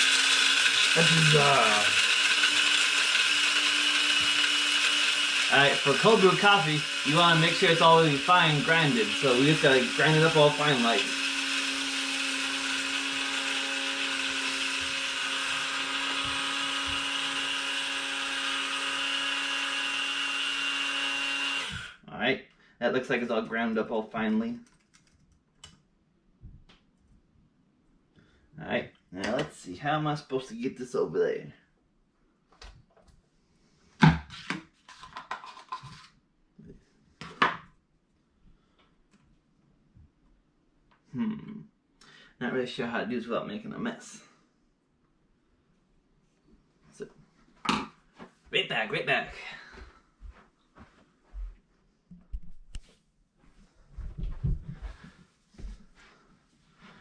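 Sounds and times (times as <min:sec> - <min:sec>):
electric coffee grinder running: 0:00.0 - 0:22.0.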